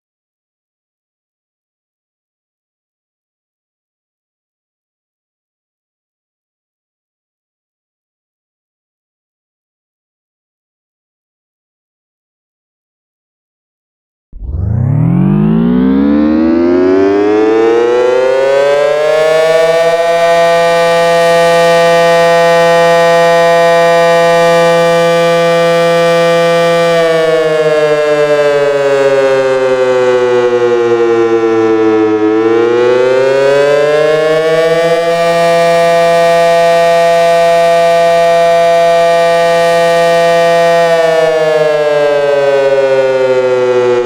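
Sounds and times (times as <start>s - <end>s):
outdoor warning siren: 14.4s - 44.0s.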